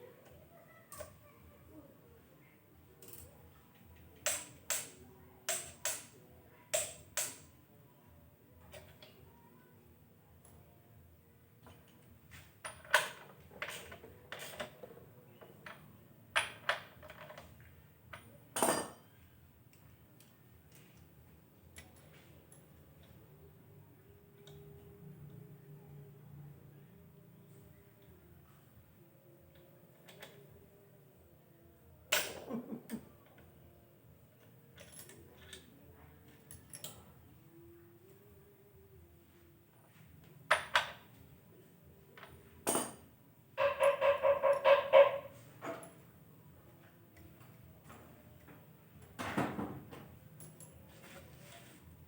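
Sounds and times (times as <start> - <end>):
tools clicking and tapping: 3.0 - 7.5, 21.7 - 23.2
metal tools clinking and knocking: 16.4 - 19.2.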